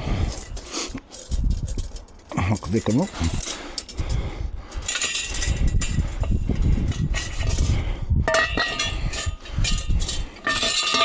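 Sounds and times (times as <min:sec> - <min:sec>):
scrap metal knocking: 0:08.3 - 0:11.0.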